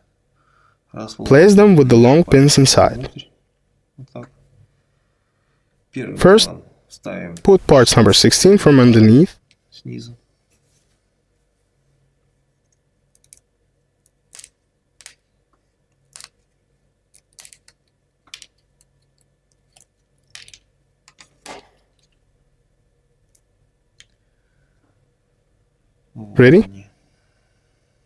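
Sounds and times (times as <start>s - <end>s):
plywood parts clicking: 17.1s - 22.2s.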